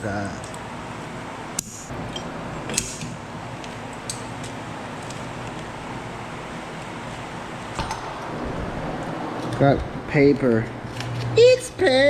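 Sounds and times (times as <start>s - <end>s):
steady background hum: 0.0s - 12.0s.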